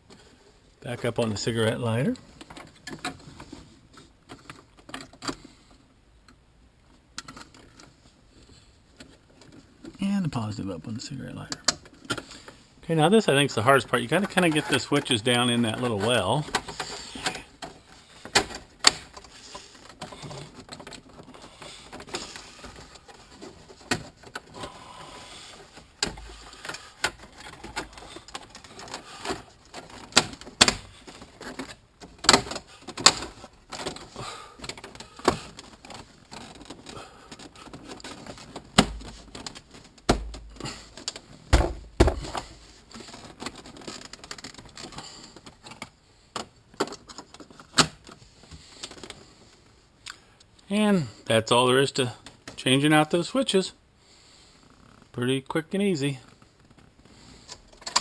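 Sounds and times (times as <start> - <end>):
dull thumps: 38.0 - 42.7.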